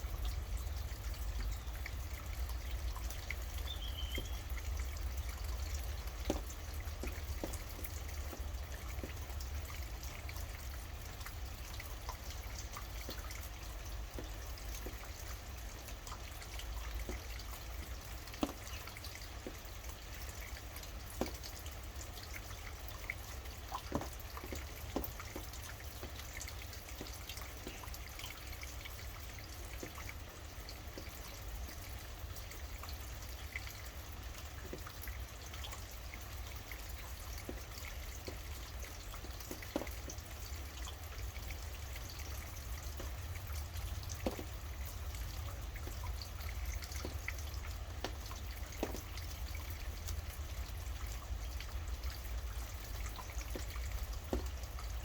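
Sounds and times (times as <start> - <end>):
raindrops pattering: 0.0 - 55.0
steady rain: 0.0 - 55.0
bird chirp: 3.6 - 4.6.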